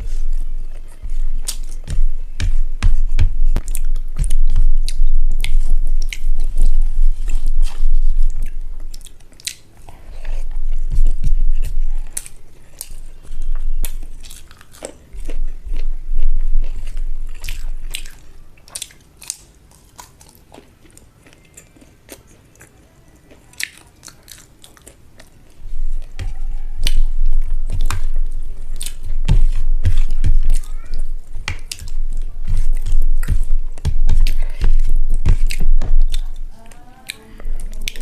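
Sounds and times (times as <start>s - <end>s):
chewing and wet mouth smacks: 0.0s - 1.9s, 3.5s - 30.7s.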